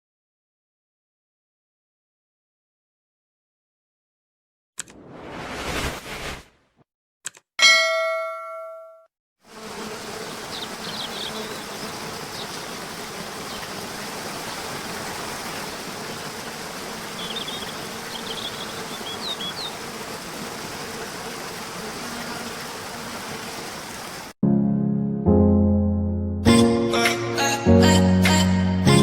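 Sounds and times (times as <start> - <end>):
waterfall rushing: 10.4 - 20.8.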